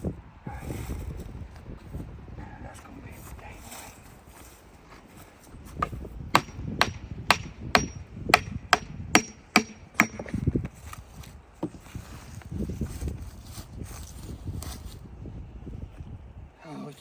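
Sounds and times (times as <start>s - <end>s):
hammer striking log: 5.8s - 10.4s.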